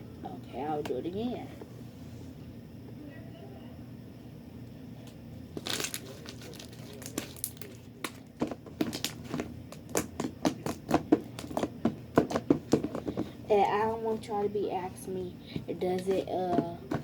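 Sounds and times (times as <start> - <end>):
slime crackling and popping: 5.6 - 13.2.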